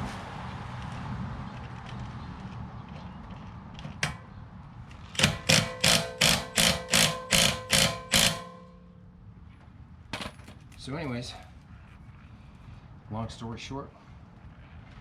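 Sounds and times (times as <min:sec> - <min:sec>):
sharp metal strikes ringing: 0:05.2 - 0:09.1.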